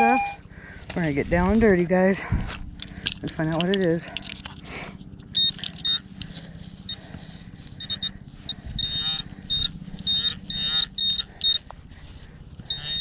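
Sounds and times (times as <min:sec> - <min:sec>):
metal detector beeping: 0:00.0 - 0:00.5, 0:05.3 - 0:06.1, 0:06.8 - 0:11.8, 0:12.6 - 0:13.0
scuffing and rustling in dirt: 0:00.7 - 0:13.0.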